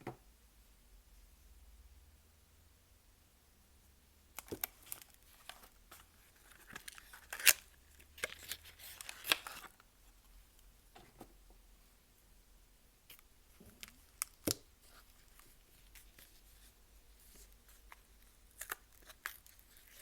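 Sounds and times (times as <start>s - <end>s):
wrapper crinkling and tearing: 4.6s - 9.8s, 18.2s - 20.0s.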